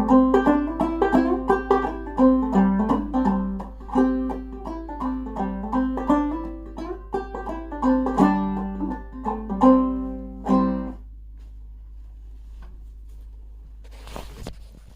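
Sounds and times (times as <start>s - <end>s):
banjo playing: 0.0s - 11.0s
faint low hum: 0.0s - 14.9s.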